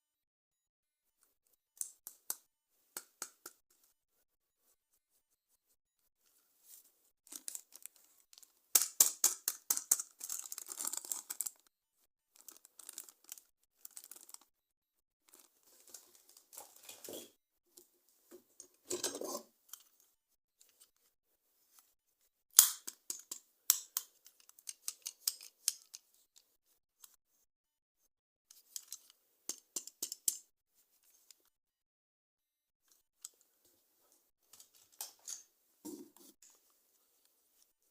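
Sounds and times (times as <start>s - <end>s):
plastic and cardboard crinkling: 6.7s - 9.0s, 9.6s - 11.7s, 12.4s - 14.5s, 15.3s - 17.3s.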